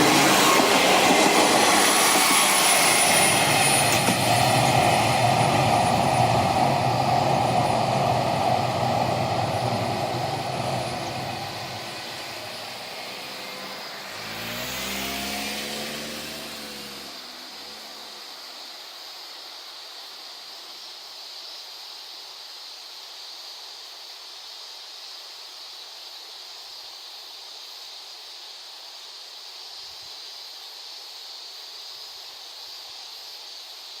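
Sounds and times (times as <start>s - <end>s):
steady high hiss: 0.0s - 34.0s.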